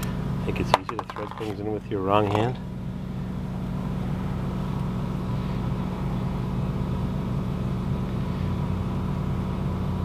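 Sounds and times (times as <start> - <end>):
low machine hum with tones: 0.0 - 10.0.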